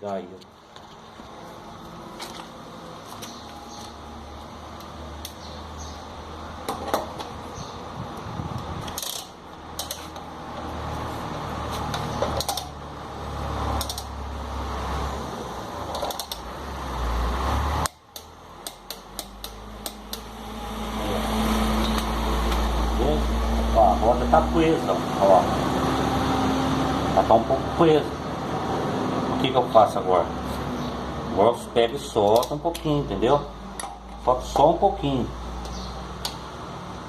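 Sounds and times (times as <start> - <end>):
metallic tool handling: 8.8 - 10.3
torque wrench clicking: 13.8 - 14.1, 17.8 - 20.3.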